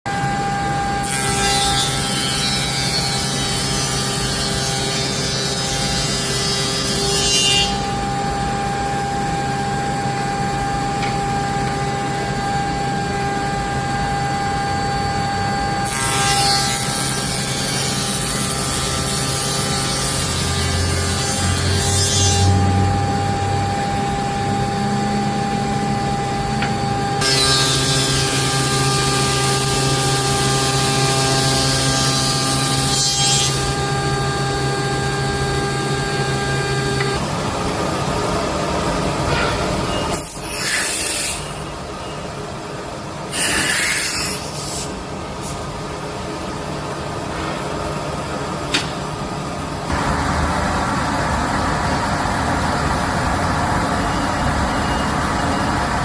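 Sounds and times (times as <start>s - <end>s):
wood shaper motor hum: 0.1s - 37.3s.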